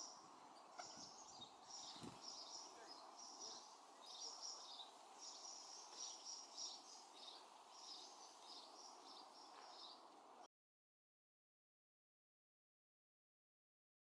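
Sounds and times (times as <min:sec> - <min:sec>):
finches twittering: 0:00.0 - 0:10.0.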